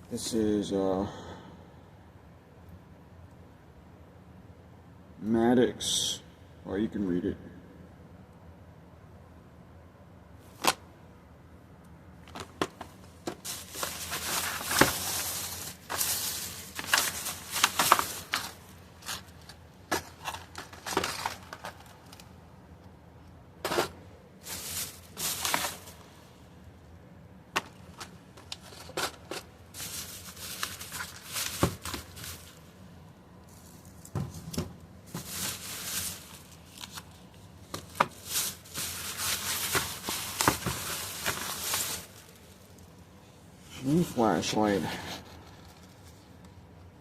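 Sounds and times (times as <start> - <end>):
packaging crinkling and rustling: 12.2 - 22.3, 23.7 - 26.1, 27.6 - 32.8, 33.4 - 42.9.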